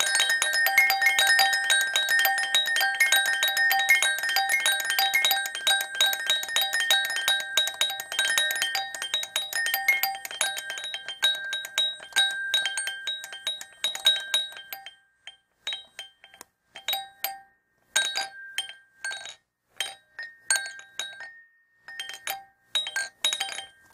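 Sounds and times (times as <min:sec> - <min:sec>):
small bell jingling: 0:00.0 - 0:14.9.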